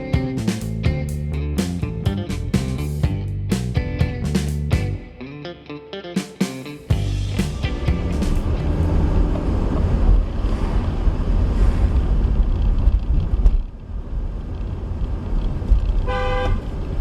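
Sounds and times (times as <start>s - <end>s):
road and wind rumble: 0.0s - 5.0s, 6.9s - 17.0s
car horn honk: 16.1s - 16.6s.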